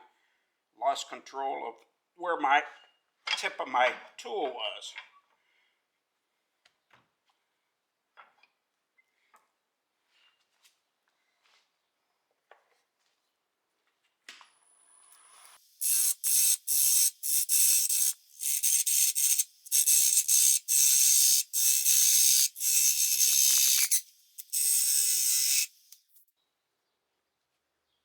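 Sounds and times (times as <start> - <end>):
lathe tool cutting wet wood: 15.4 - 25.8.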